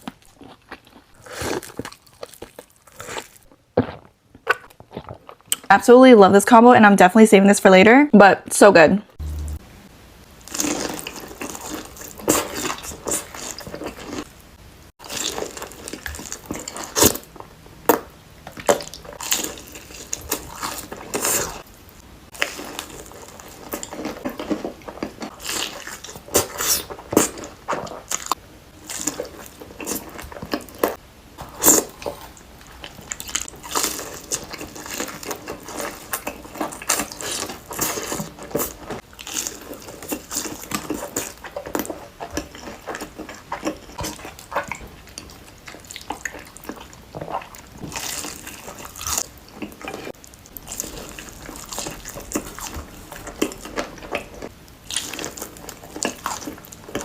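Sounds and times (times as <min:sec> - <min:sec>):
chewing and mouth smacks: 0:00.0 - 0:05.7, 0:31.6 - 0:57.0.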